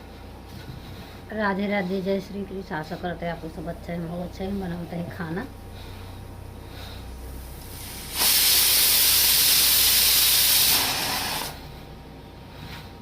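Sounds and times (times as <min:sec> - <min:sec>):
loud steady hiss: 0:07.2 - 0:11.6.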